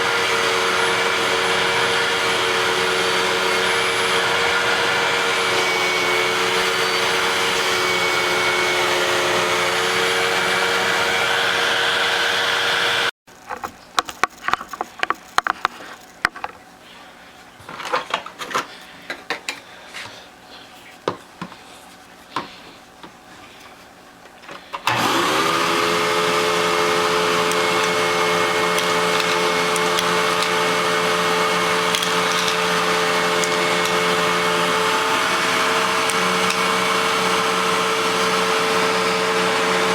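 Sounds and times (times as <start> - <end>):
vacuum cleaner motor: 0.0 - 13.2, 24.8 - 39.9.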